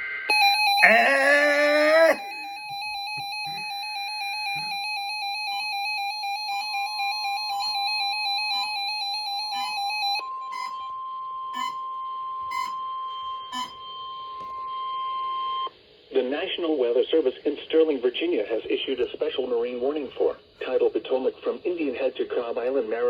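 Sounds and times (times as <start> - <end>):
steady electronic alarm tone: 0.1 - 15.7
wavering electronic tone: 9.7 - 15.6.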